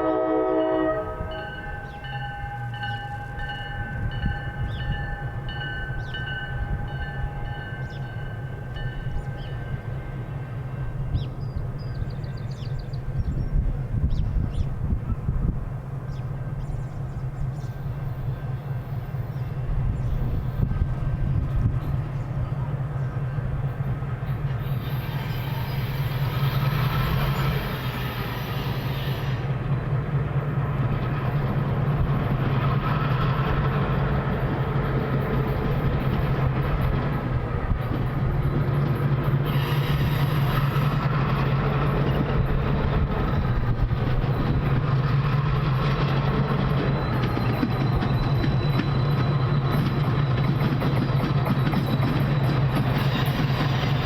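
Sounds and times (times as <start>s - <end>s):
train wheels rumbling on rails: 0.0s - 54.0s
train hiss: 15.2s - 54.0s.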